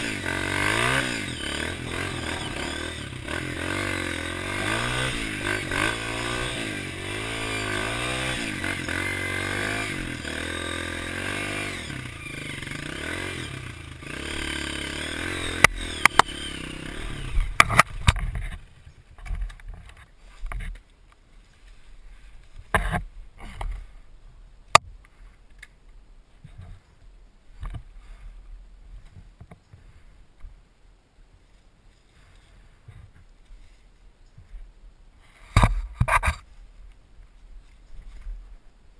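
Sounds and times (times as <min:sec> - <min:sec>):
motorcycle engine revving: 0:00.0 - 0:19.6
thumps and scrapes: 0:17.3 - 0:24.0, 0:31.9 - 0:36.6.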